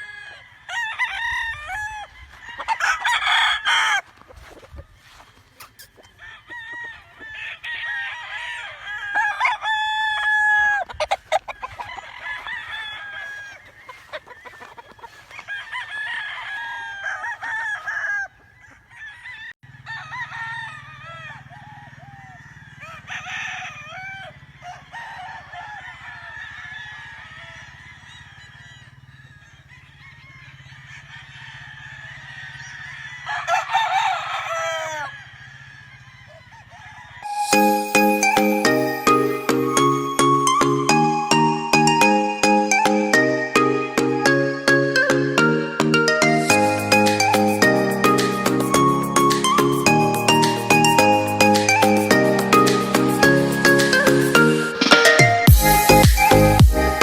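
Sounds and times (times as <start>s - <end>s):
chickens clucking: 0.0s - 19.1s, 36.2s - 57.0s
roosters crowing: 0.0s - 57.0s.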